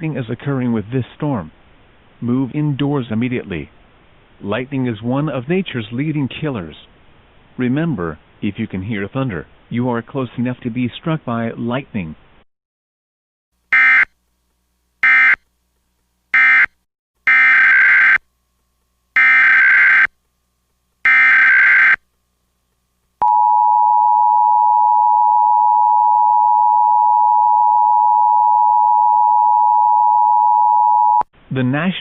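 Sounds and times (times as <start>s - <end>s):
steady alarm tone: 13.7s - 14.1s, 15.0s - 15.4s, 16.4s - 18.2s, 19.2s - 20.1s, 21.0s - 22.0s.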